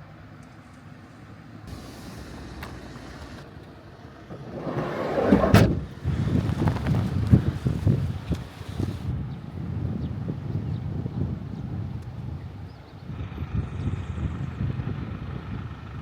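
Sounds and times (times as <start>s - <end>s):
heavy rain: 1.7s - 3.4s
storm wind gusting: 1.7s - 9.2s
wind buffeting microphone: 1.7s - 16.0s.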